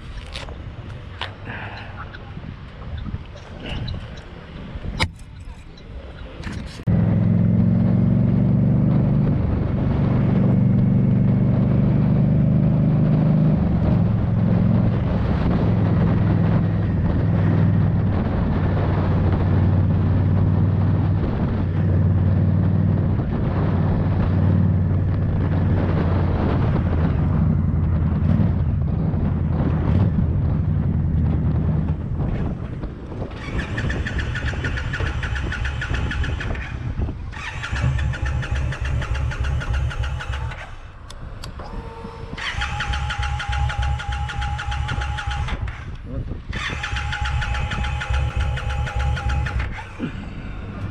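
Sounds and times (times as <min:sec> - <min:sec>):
motorcycle engine running: 0:06.9 - 0:50.9
high pulsing whine: 0:37.8 - 0:45.8, 0:47.0 - 0:50.9.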